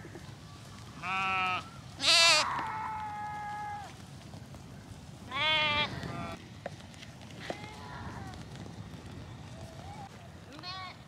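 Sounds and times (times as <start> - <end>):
sheep bleating: 1.0 - 3.9, 5.3 - 6.4.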